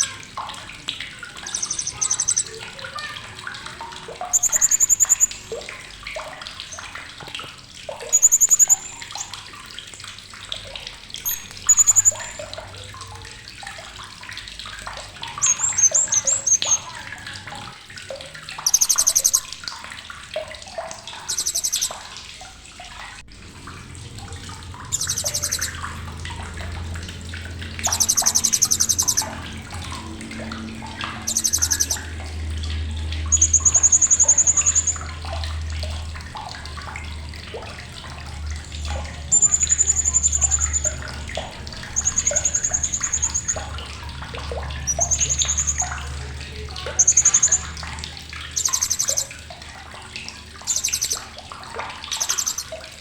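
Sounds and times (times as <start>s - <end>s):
soft background chirping: 1.4s - 2.8s, 4.2s - 7.0s, 7.9s - 9.4s, 11.2s - 12.5s, 15.3s - 17.0s, 18.6s - 19.7s, 21.2s - 22.1s, 24.9s - 25.9s, 27.8s - 29.5s, 31.2s - 32.1s, 39.2s - 41.1s, 46.8s - 47.8s, 48.6s - 49.4s, 50.6s - 51.3s, 52.1s - 52.8s
parrot rattling chatter calls: 1.4s - 2.9s, 4.3s - 5.5s, 18.6s - 19.6s, 21.2s - 21.9s, 24.9s - 25.8s, 27.8s - 29.4s, 31.2s - 32.1s, 48.6s - 49.3s, 52.2s - 52.7s.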